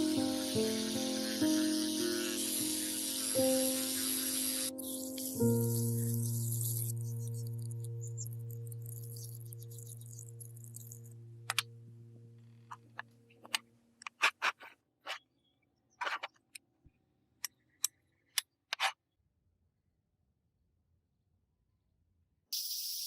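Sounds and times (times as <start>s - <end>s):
brief scraping noises: 14.1s - 15.2s.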